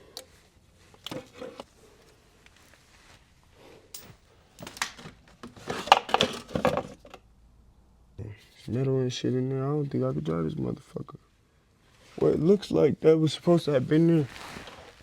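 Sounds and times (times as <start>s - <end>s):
handling clicks and knocks: 3.9s - 7.2s.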